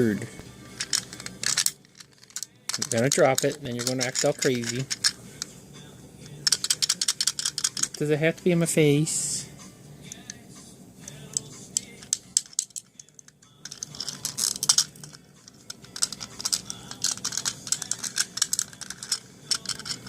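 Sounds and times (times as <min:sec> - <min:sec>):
beak clacking on plastic toy: 0:06.3 - 0:08.0, 0:11.1 - 0:20.0.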